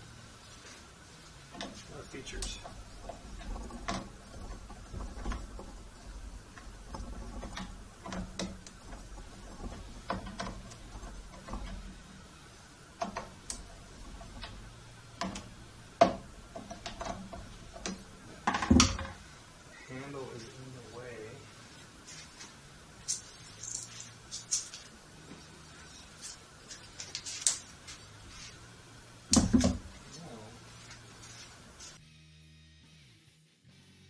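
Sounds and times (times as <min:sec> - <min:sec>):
clicks and knocks on saw housing: 0:01.5 - 0:12.0, 0:13.0 - 0:14.6, 0:15.2 - 0:19.2.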